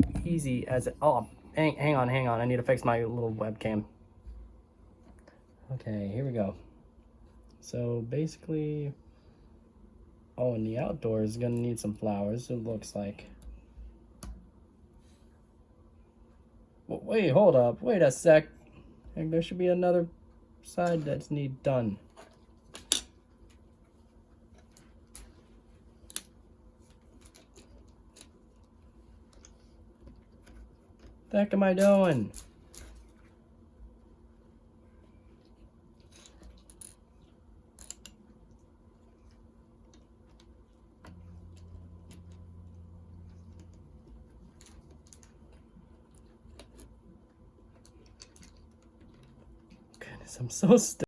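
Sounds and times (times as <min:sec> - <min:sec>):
low hum: 0:20.0 - 0:50.5.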